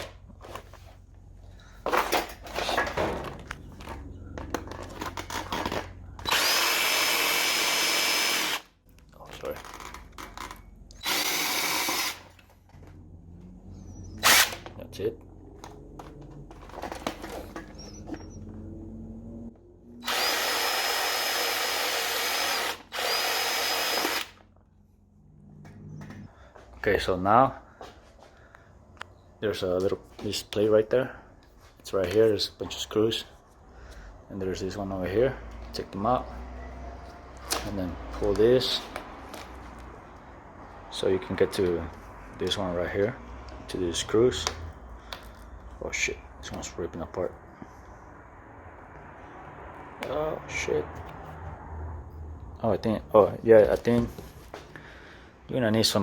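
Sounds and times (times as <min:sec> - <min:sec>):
power drill drilling metal: 0:06.2 - 0:08.7, 0:11.0 - 0:12.4, 0:14.2 - 0:14.6, 0:20.0 - 0:24.4.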